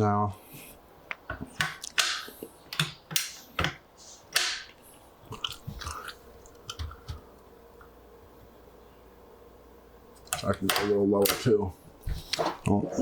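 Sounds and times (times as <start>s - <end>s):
clicks and taps on wood: 1.1s - 4.8s.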